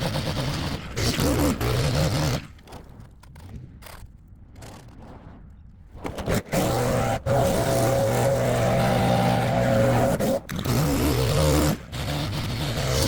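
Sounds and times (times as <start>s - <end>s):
motorized lawn tool running: 6.5s - 13.0s.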